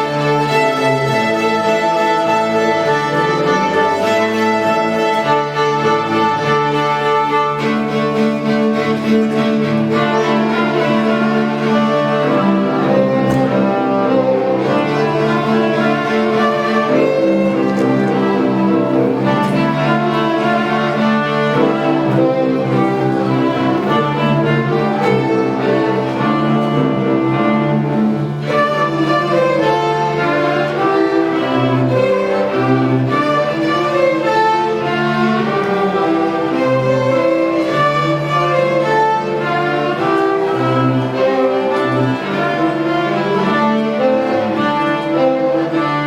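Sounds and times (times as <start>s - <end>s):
string group playing: 0.0s - 46.0s.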